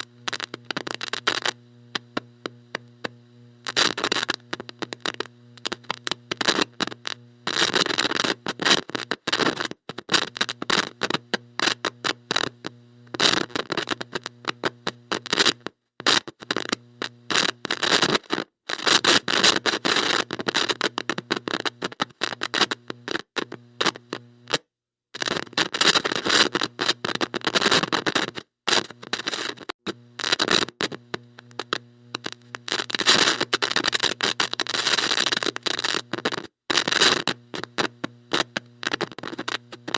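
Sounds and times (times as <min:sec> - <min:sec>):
low electrical buzz: 0:00.0 - 0:07.5, 0:31.0 - 0:32.7
static crackling and hissing: 0:00.0 - 0:39.9.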